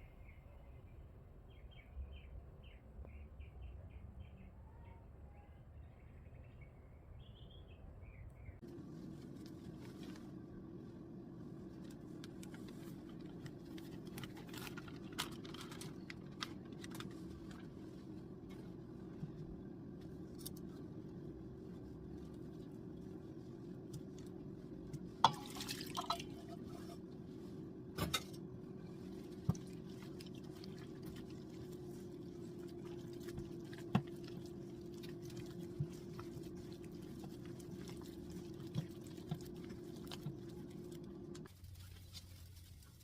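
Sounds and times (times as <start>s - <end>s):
steady low hum: 8.5s - 43.0s.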